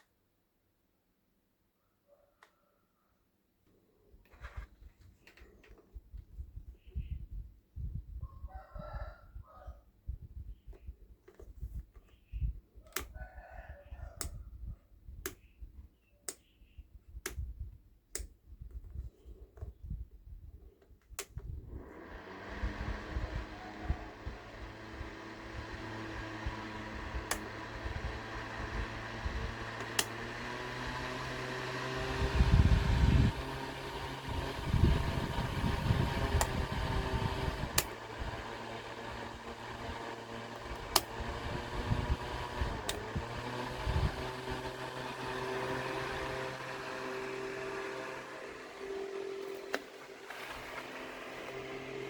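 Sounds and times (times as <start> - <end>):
electric fan motor humming: 21.3 - 52.0
sharp clicks: 40.4 - 45.8.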